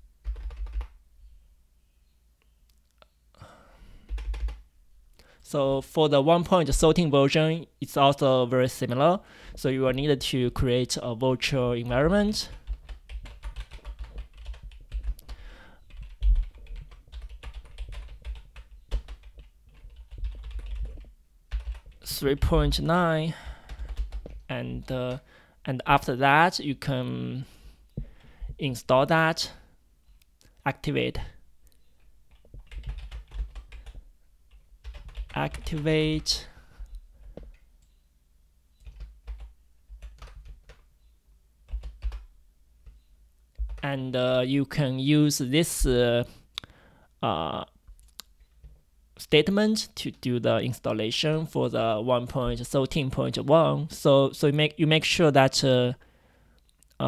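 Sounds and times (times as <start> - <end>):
typing on computer keyboard: 0.2 - 0.9, 4.1 - 4.6, 12.4 - 22.0, 23.7 - 24.5, 32.3 - 34.0, 34.8 - 35.8, 38.8 - 40.8, 41.7 - 43.0, 43.6 - 43.8.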